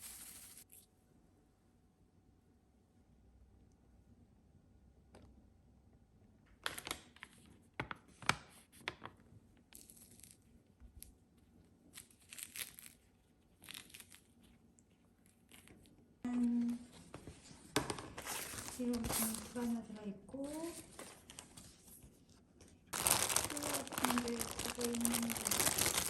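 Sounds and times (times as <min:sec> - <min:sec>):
packaging tearing and crinkling: 0:00.0 - 0:00.7, 0:12.0 - 0:14.5, 0:18.2 - 0:19.7, 0:22.9 - 0:26.0.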